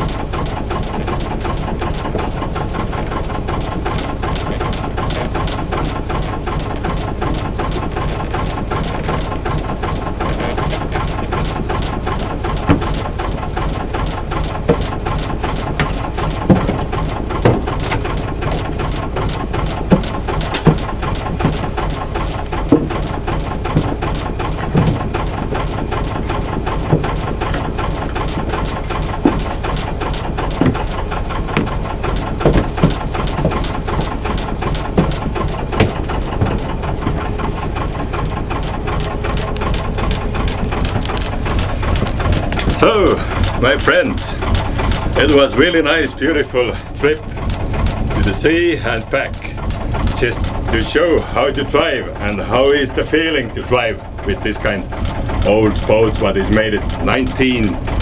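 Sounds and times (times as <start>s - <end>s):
short sharp knocks: 0.0s - 43.8s
boat engine chugging: 0.0s - 58.0s.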